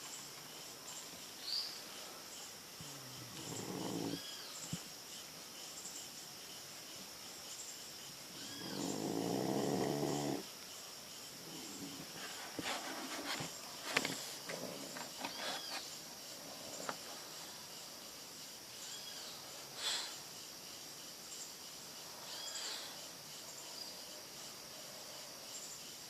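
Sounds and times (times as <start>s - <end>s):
dog snoring: 2.9s - 4.2s, 8.6s - 10.4s.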